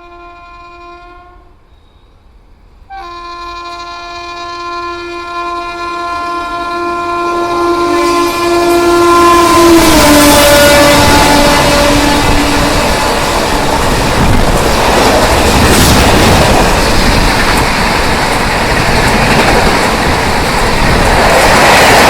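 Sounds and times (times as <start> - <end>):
locomotive horn blast: 0.0 - 1.6, 2.9 - 13.8
rushing noise of passing train: 0.0 - 22.0.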